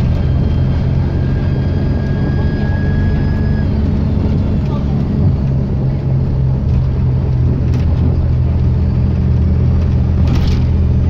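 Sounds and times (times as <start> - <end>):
turbocharger whistle: 0.0 - 4.2
diesel bus engine running: 0.0 - 11.0.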